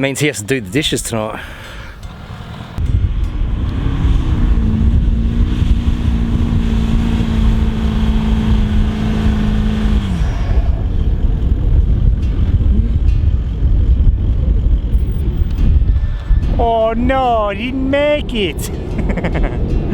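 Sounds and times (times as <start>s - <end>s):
engine revving under load: 1.9s - 13.5s.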